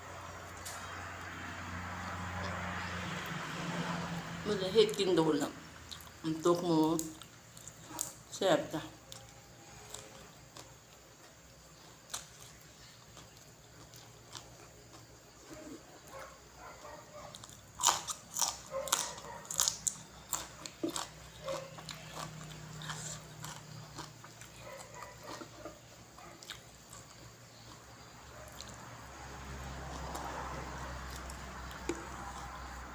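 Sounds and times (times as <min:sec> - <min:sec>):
person chewing and crunching: 0:05.9 - 0:06.2, 0:09.1 - 0:15.9, 0:17.3 - 0:28.8, 0:31.1 - 0:32.9.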